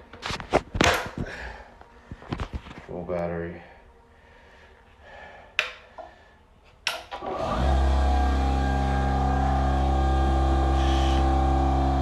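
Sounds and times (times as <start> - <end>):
air compressor motor running: 7.2 - 12.0.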